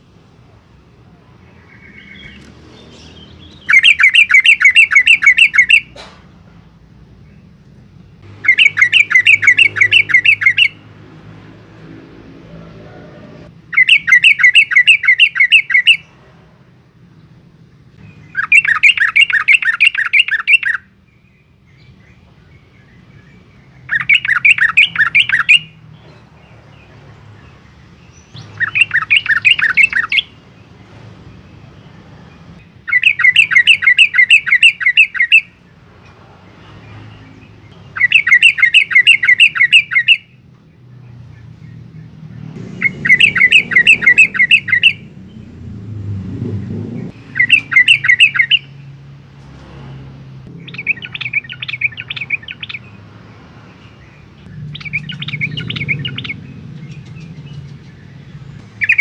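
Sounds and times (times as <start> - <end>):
bird singing chattering phrases: 0.9 - 7.6, 8.2 - 10.8, 13.3 - 16.1, 18.0 - 20.9, 21.8 - 30.4, 32.6 - 35.6, 36.9 - 40.4, 41.0 - 45.8, 46.6 - 48.9, 50.5 - 53.0, 53.8 - 59.0.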